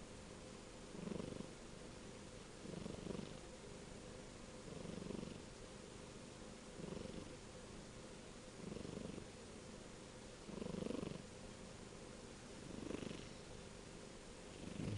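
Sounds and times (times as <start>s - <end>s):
kitten purring: 0.9s - 1.6s, 2.6s - 3.4s, 4.6s - 5.5s, 6.8s - 7.4s, 8.6s - 9.3s, 10.5s - 11.3s, 12.6s - 13.4s, 14.5s - 14.9s.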